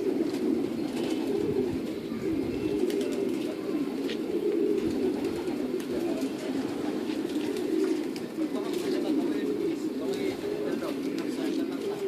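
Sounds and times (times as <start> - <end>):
pigeons cooing in chorus: 0.0 - 12.0.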